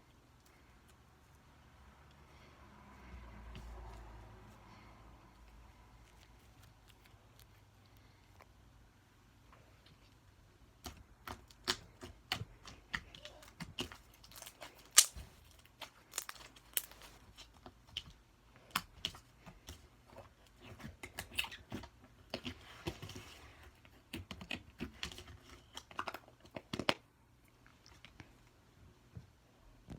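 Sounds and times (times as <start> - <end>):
slime soft crackling: 14.1 - 17.5
slime popping and clicking: 14.4 - 15.2.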